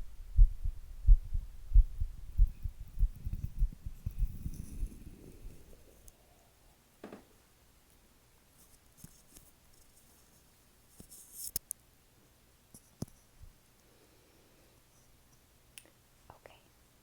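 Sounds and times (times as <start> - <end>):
soft rustles: 0.0 - 6.2, 8.5 - 11.6
sharp tap: 7.0 - 7.3.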